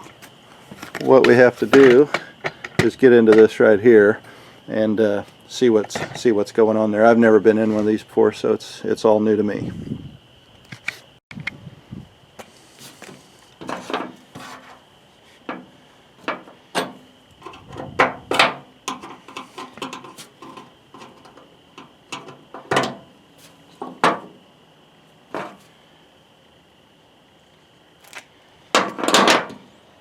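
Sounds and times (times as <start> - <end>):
scraping and rubbing: 12.6 - 15.6, 19.0 - 21.4.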